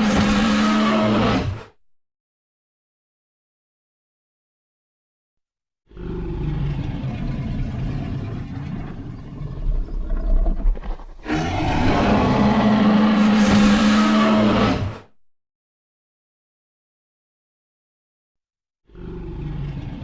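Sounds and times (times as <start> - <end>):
dinosaur roar sound effect: 0.0 - 1.7, 5.9 - 15.1, 18.9 - 20.0.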